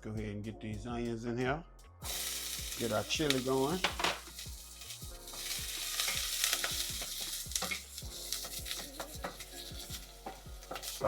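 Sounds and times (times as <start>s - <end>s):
onions sizzling in oil: 2.0s - 11.0s
utensil scraping and tapping pot: 2.8s - 11.0s.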